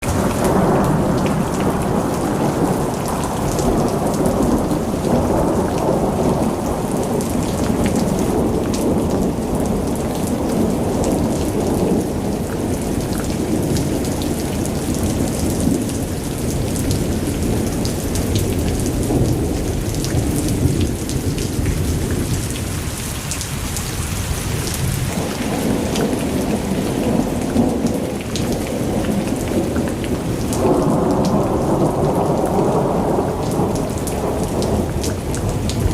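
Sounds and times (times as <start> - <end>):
thunder rumbling: 0.0 - 23.2, 24.0 - 35.9
heavy rain: 0.0 - 35.9.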